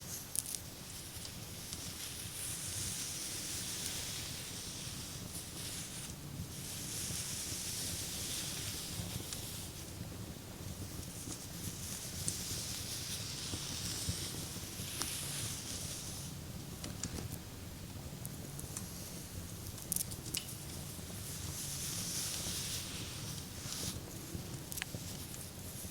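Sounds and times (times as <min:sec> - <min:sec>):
hands rubbing a back: 0:00.9 - 0:09.9, 0:10.6 - 0:16.4, 0:20.5 - 0:25.9.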